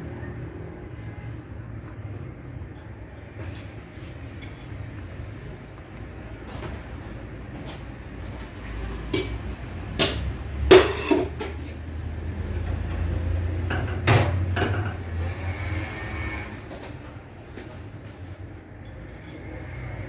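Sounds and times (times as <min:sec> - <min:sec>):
kitchenware knocking and clattering: 0:10.0 - 0:11.6, 0:13.6 - 0:15.0.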